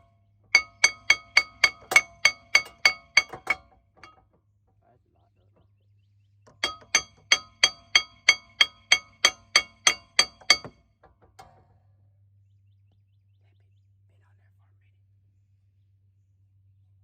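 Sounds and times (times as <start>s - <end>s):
hammer ringing on metal rotor: 0.0s - 4.2s, 6.5s - 10.9s.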